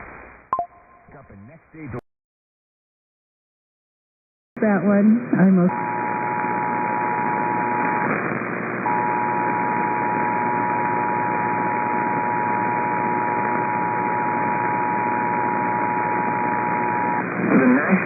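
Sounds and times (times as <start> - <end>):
radio static hiss: 0.0 - 0.4, 4.6 - 18.0.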